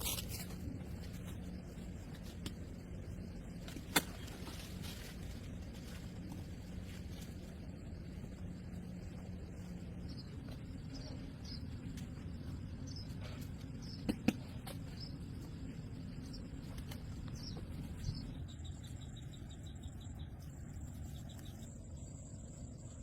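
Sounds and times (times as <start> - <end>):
insects chirping: 0.0 - 23.0
low rumble: 0.4 - 23.0.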